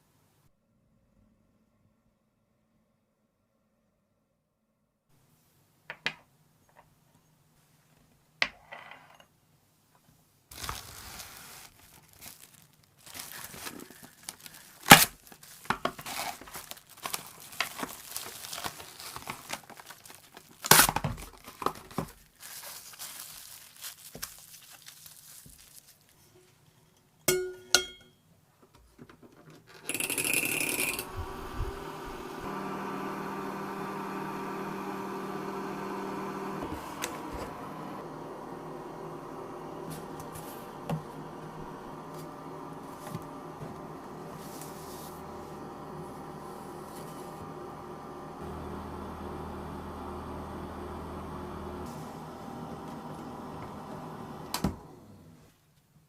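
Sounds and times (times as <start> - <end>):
rustling and crinkling: 10.0 - 27.0, 39.3 - 47.5
small machine humming: 29.9 - 55.4.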